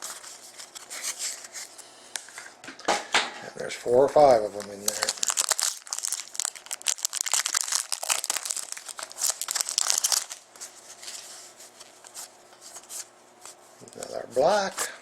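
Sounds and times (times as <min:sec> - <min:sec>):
wrapper rustling: 0:04.3 - 0:13.1
wrapper crinkling and tearing: 0:04.4 - 0:11.2.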